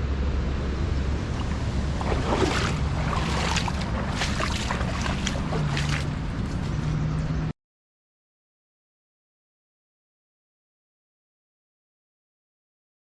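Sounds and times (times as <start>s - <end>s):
low steady hum: 0.0s - 7.5s
wind rumbling on microphone: 0.0s - 7.5s
moving water: 0.6s - 7.5s.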